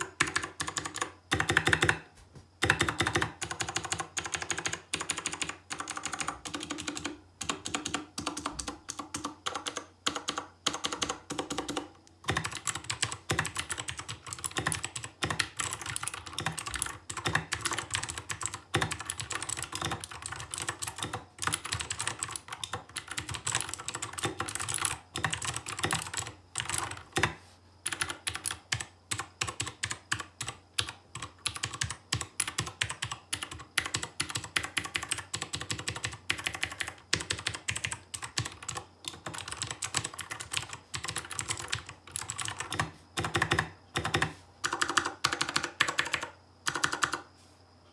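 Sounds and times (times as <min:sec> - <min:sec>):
mechanical keyboard typing: 0:00.0 - 0:47.3.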